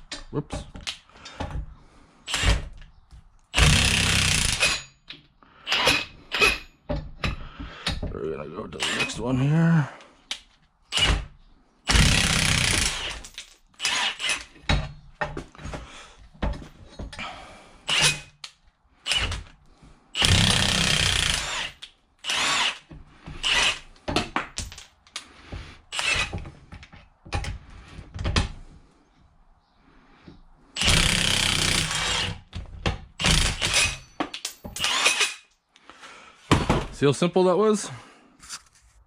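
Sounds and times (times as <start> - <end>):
power tool in trigger bursts: 3.6 - 4.8, 11.9 - 13.2, 20.2 - 23.8, 25.9 - 26.3, 30.8 - 32.4, 33.2 - 34.0.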